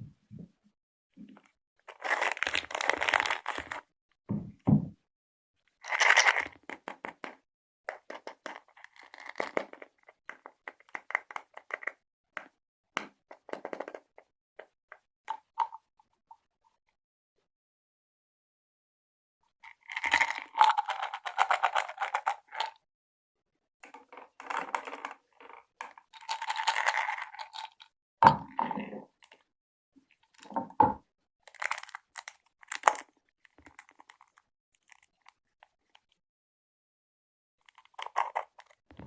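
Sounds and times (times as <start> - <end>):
candy packaging crinkling: 1.9 - 3.8, 5.9 - 7.2, 8.1 - 9.9, 20.0 - 22.7, 24.4 - 27.8, 31.5 - 33.1.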